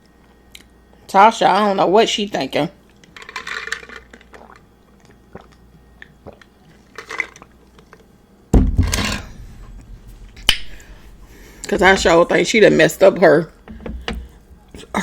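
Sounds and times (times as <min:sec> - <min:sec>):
chewing and wet mouth sounds: 0:04.0 - 0:08.2
heavy low thump: 0:08.5 - 0:12.3.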